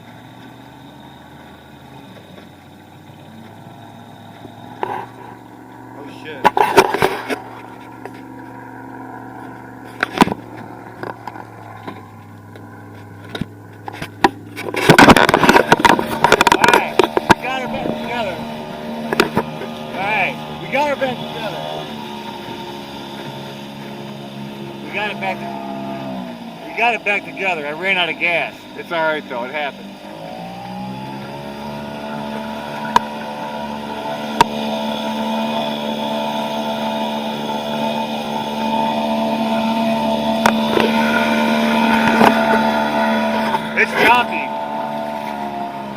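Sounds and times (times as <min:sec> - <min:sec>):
low steady hum: 0:00.0 - 0:45.9
outboard motor running: 0:00.0 - 0:45.9
sharp knocks and scrapes: 0:04.8 - 0:05.4, 0:06.4 - 0:08.6, 0:12.9 - 0:18.1.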